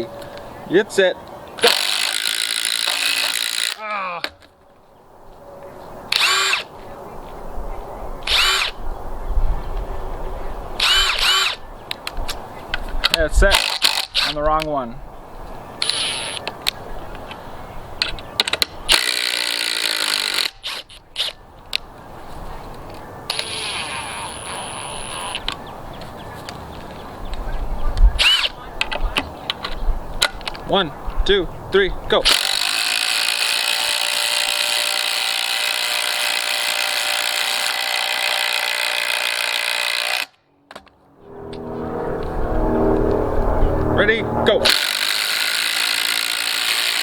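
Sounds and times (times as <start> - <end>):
impact driver ratcheting rattle: 1.6 - 3.8, 13.5 - 14.4, 18.4 - 20.9, 32.3 - 40.3, 44.7 - 47.0.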